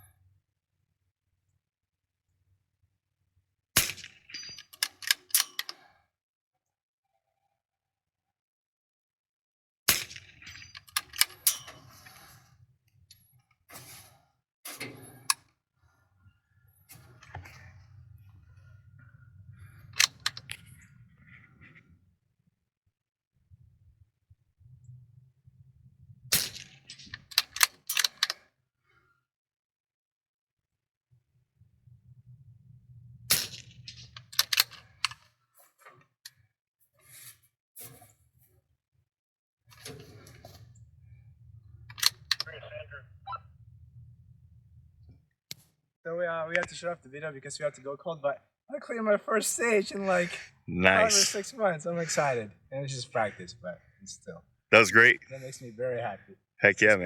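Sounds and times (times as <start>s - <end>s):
rifle bolt clicking: 27.2s - 28.4s, 34.2s - 34.8s.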